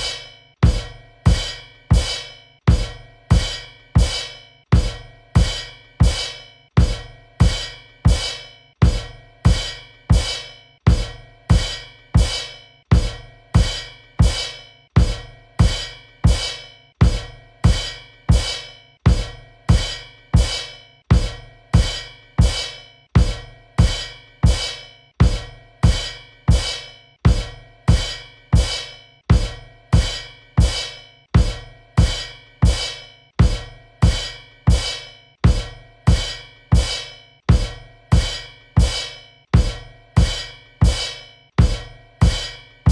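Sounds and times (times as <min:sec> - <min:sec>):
bass drum and cymbal hits: 0:00.0 - 0:42.9.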